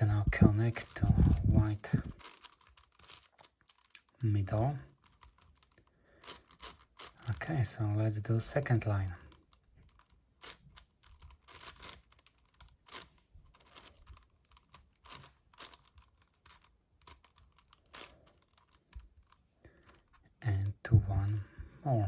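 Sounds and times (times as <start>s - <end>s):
puzzle cube layers clicking: 0.8s - 7.4s, 8.6s - 20.2s.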